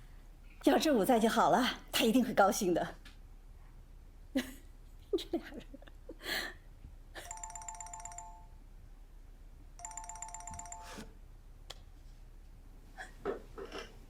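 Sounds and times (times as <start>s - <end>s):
mobile phone ringing: 7.2s - 8.6s, 9.8s - 11.2s.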